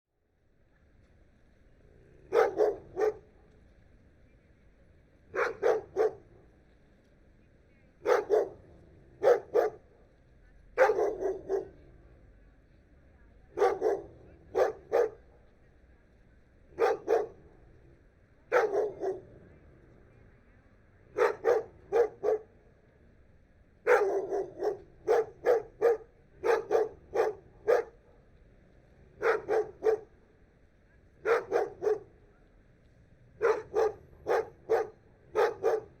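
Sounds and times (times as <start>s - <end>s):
dog barking: 2.3s - 3.3s, 5.3s - 6.2s, 8.0s - 8.6s, 9.2s - 9.8s, 10.8s - 11.8s, 13.6s - 15.2s, 16.8s - 17.4s, 18.5s - 19.3s, 21.2s - 22.5s, 23.9s - 28.0s, 29.2s - 30.1s, 31.2s - 32.1s, 33.4s - 36.0s.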